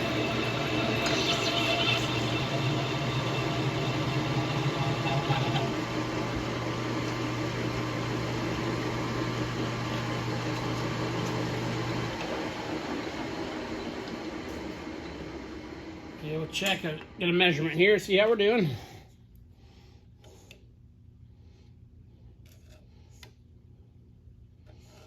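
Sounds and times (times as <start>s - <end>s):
lathe cutting metal: 0.0s - 14.5s
lathe motor hum: 0.0s - 17.7s.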